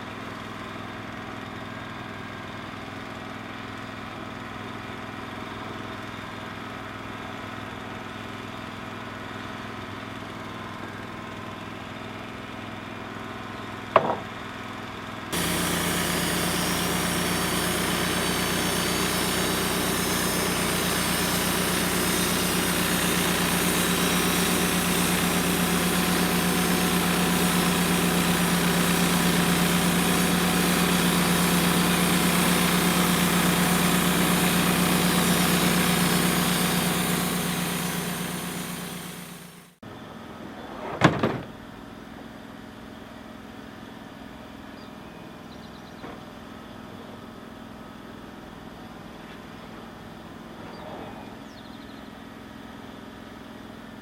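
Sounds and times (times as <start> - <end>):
engine running: 13.7 - 40.6.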